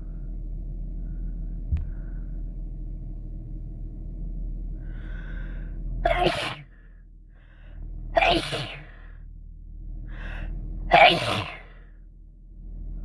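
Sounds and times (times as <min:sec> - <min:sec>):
person sneezing: 0:06.1 - 0:06.6, 0:08.2 - 0:08.9, 0:10.9 - 0:11.7.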